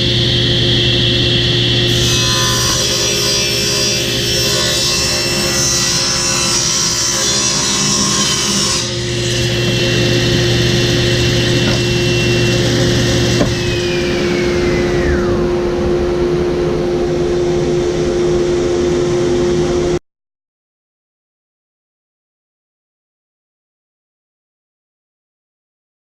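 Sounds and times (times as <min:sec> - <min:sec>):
machine motor running: 0:09.0 - 0:18.8
low hum: 0:09.0 - 0:20.0
high whine falling in pitch: 0:09.7 - 0:20.0.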